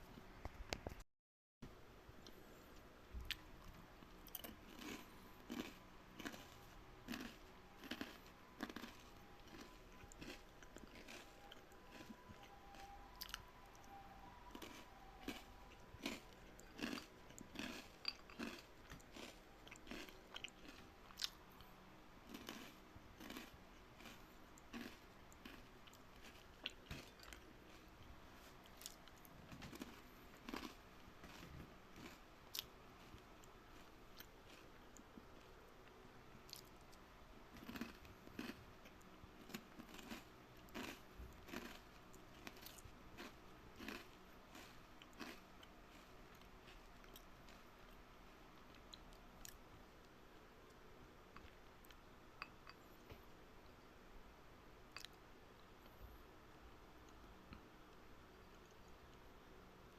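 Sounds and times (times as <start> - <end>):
watermelon being chewed: 3.2 - 49.6.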